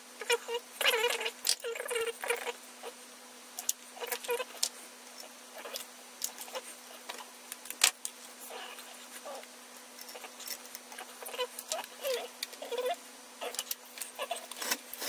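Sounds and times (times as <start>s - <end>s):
faint hum: 0.0s - 15.0s
cable handling clicks and squeaks: 10.0s - 12.8s.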